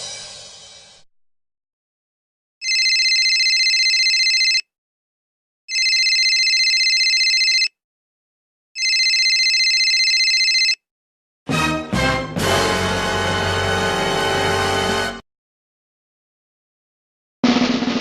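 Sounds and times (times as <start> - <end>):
telephone ringing electronic trill: 2.6 - 4.6, 5.7 - 7.7, 8.8 - 10.8.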